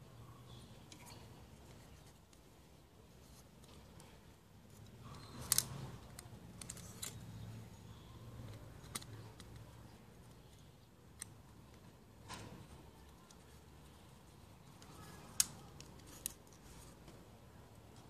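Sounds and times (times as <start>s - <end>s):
hard plastic parts clicking: 4.8s - 7.5s, 8.4s - 13.6s.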